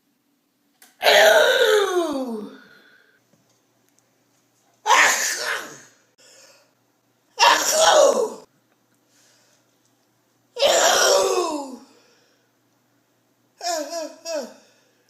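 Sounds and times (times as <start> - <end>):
elderly woman sneezing loudly: 1.0 - 2.6, 4.9 - 5.9, 7.4 - 8.5, 10.6 - 11.8.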